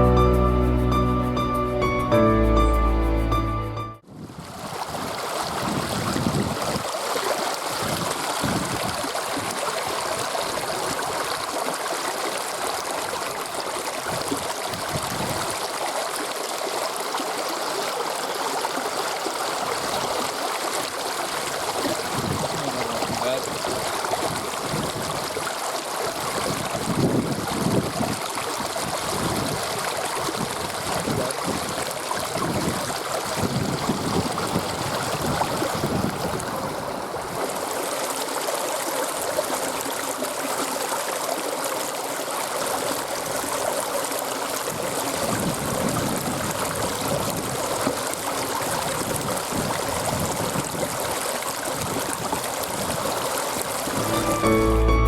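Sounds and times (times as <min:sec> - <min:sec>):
wind buffeting microphone: 0:04.1 - 0:06.9, 0:07.8 - 0:09.5, 0:14.1 - 0:15.6, 0:21.9 - 0:25.4, 0:26.3 - 0:37.4, 0:45.2 - 0:47.8, 0:48.9 - 0:51.1
river water rushing: 0:04.3 - 0:55.0.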